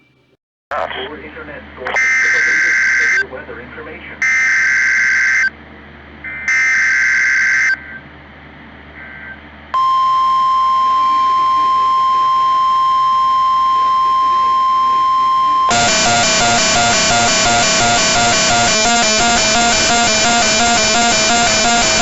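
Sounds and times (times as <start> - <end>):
weather radio alert tone: 9.8 - 22.0
shrill digital data bursts: 14.3 - 22.0
electronic music with steady beat: 15.6 - 22.0.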